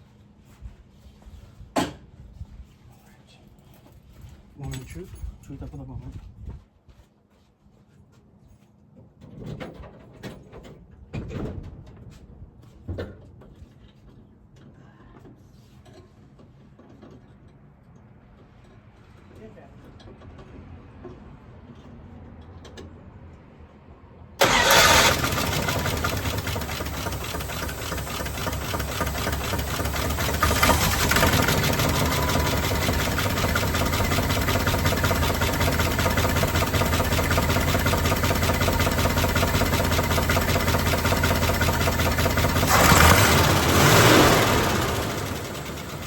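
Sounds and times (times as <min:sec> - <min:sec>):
car engine starting and idling: 0:24.4 - 0:46.0.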